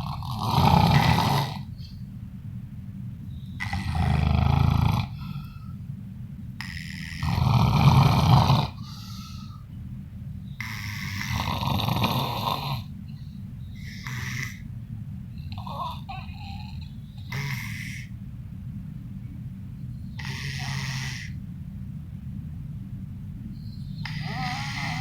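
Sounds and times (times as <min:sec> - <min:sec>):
people snoring: 0:00.0 - 0:01.7, 0:03.6 - 0:05.4, 0:06.6 - 0:09.4, 0:10.6 - 0:12.9, 0:13.8 - 0:14.6, 0:15.5 - 0:18.1, 0:20.2 - 0:21.4, 0:24.0 - 0:25.0.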